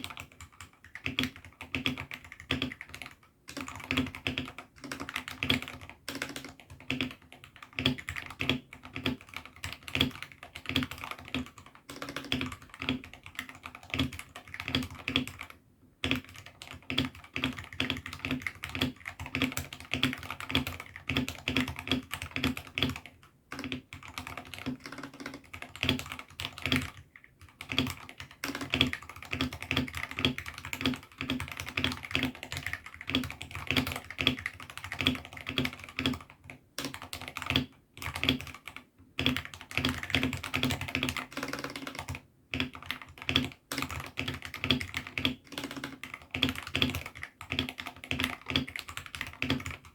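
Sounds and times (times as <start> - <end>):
mechanical keyboard typing: 0.0 - 49.9.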